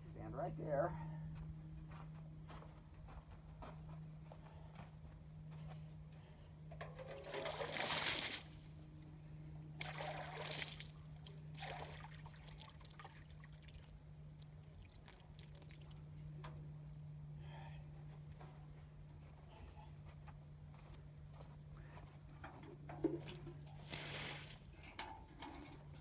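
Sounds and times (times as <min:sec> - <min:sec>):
water pouring: 0:07.1 - 0:08.7, 0:09.8 - 0:13.8, 0:23.8 - 0:24.7.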